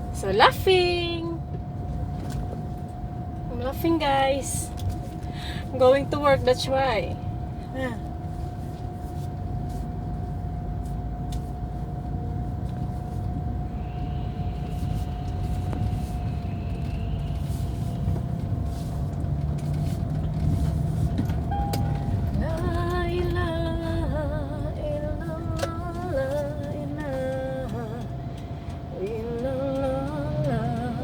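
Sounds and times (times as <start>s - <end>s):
car engine and road rumble: 0.0s - 31.0s
faint whine: 0.0s - 31.0s.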